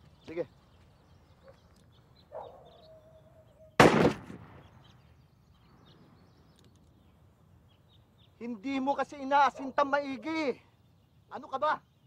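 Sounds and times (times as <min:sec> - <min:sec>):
gunshot with echo: 0:03.8 - 0:04.9.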